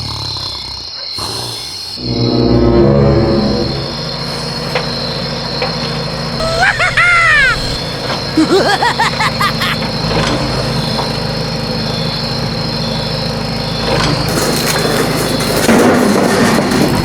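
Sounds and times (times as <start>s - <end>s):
chirping glides: 2.0s - 13.9s
engine-like drone: 2.0s - 17.0s.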